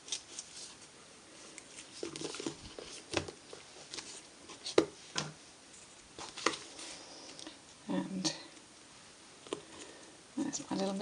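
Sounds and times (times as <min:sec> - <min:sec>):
paper rustling: 0:00.0 - 0:04.9.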